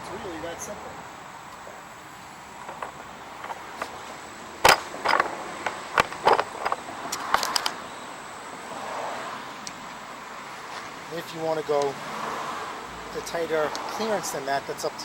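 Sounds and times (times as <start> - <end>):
steady hiss: 0.0 - 15.0
sharp knocks and clicks: 2.6 - 4.0, 4.6 - 7.8.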